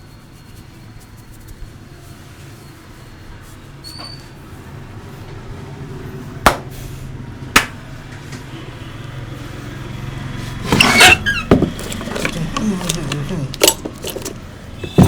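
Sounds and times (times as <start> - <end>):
hands slapping: 7.6 - 7.8.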